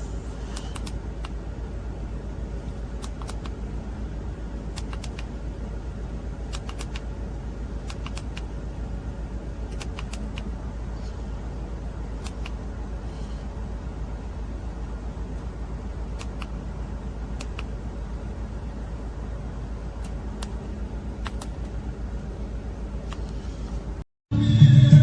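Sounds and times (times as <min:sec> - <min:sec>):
low hum and rumble: 0:00.0 - 0:25.0
small sharp clicks: 0:00.6 - 0:01.3, 0:02.6 - 0:03.5, 0:04.8 - 0:05.3, 0:06.5 - 0:07.0, 0:07.9 - 0:08.5, 0:09.7 - 0:10.5, 0:21.2 - 0:21.7.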